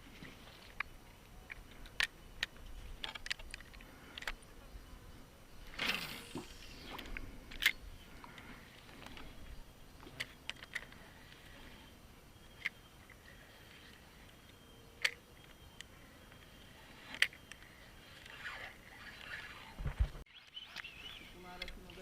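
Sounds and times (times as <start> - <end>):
fishing tackle clicks and knocks: 0.7 - 4.4.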